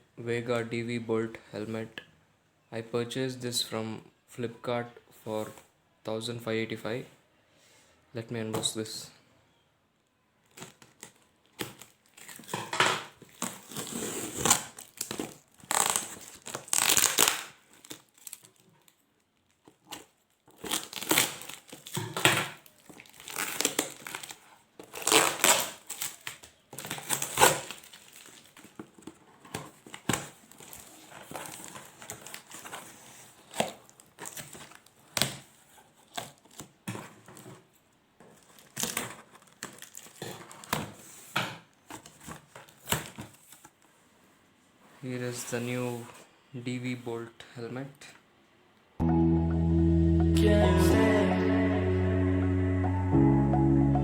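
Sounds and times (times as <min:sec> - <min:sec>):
packaging crinkling and tearing: 0:10.4 - 0:37.6, 0:38.3 - 0:43.7.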